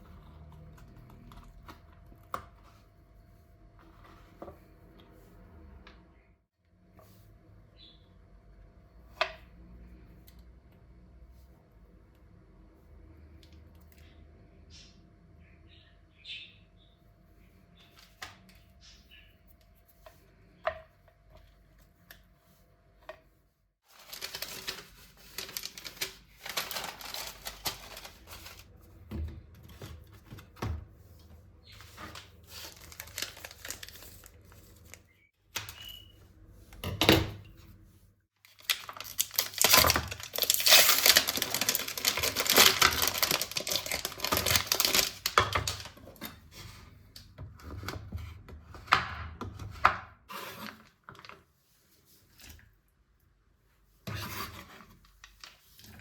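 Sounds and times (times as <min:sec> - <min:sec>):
packaging crinkling and tearing: 0:23.9 - 0:28.7, 0:31.8 - 0:35.1, 0:38.4 - 0:46.0.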